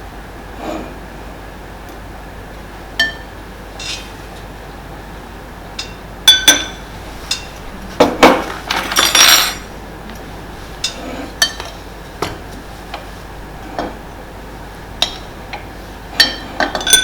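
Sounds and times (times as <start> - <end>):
spoon clinking against dish: 5.8 - 7.6.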